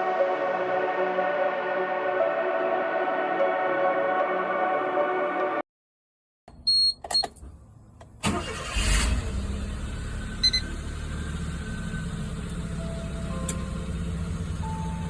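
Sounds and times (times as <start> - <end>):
car engine starting and idling: 7.1 - 15.0.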